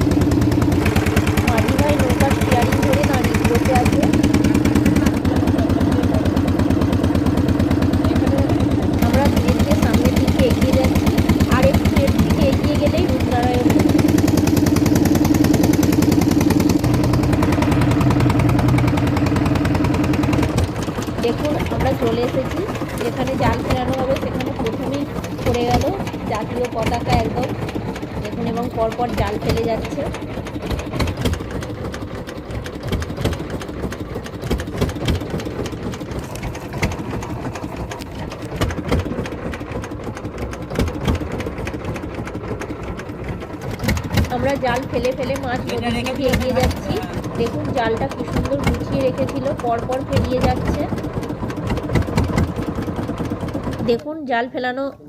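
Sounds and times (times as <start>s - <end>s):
deep hum: 0.0s - 31.9s
boat engine chugging: 0.0s - 55.0s.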